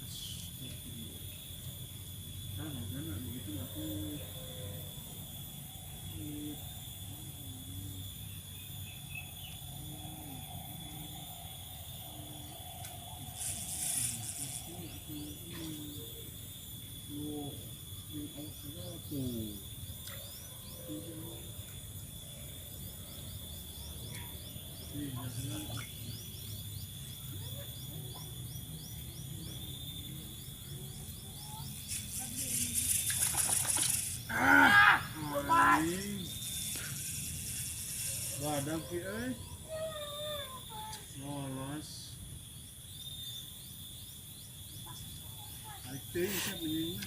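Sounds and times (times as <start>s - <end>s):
insects chirring: 0.0s - 47.0s
short hissing rustle: 12.9s - 15.1s, 31.6s - 34.4s, 35.8s - 39.0s.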